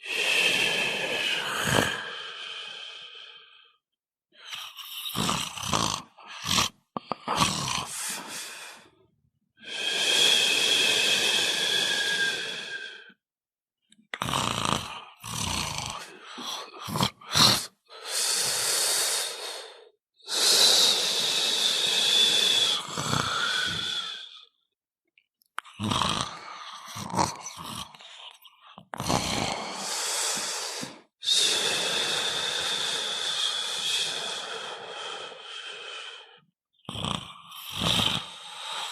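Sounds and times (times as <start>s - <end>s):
person snoring with whistling: 0.0s - 2.8s, 4.4s - 8.8s, 9.6s - 13.2s, 14.2s - 18.5s, 20.2s - 24.5s, 25.7s - 28.0s, 29.0s - 35.8s, 36.8s - 38.9s.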